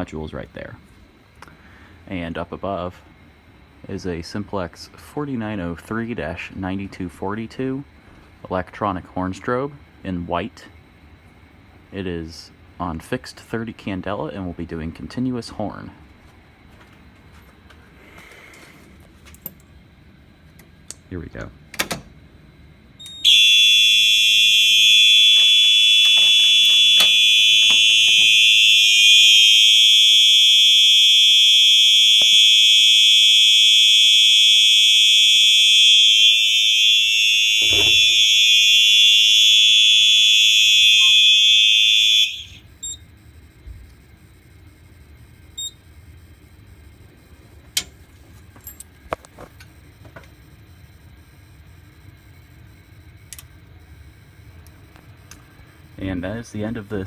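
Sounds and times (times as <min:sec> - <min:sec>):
electronic horn tone: 0:23.1 - 0:42.7.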